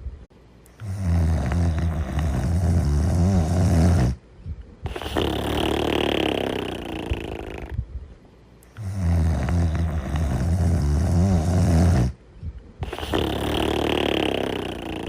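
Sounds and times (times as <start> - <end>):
person snoring: 0.7 - 4.2, 4.9 - 7.8, 8.7 - 12.2, 12.8 - 15.0
breathy hissing out-breath: 12.8 - 15.0.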